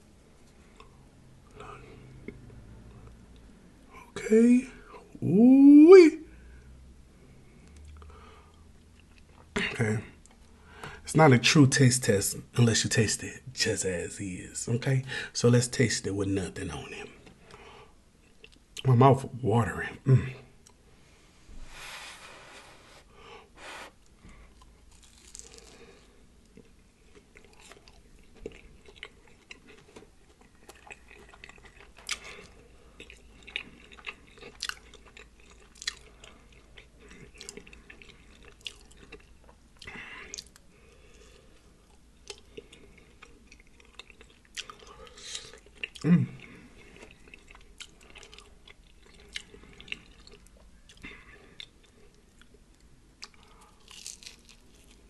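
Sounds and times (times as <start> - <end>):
person chewing and smacking: 26.4 - 55.0.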